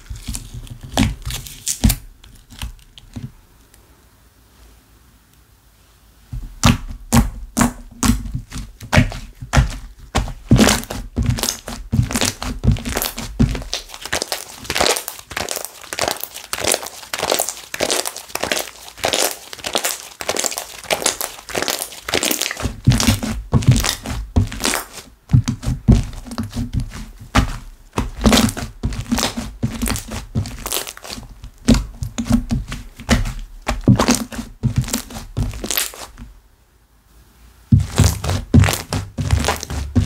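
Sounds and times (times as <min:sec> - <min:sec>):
slime crackling pops: 0:08.9 - 0:25.6, 0:33.0 - 0:36.1.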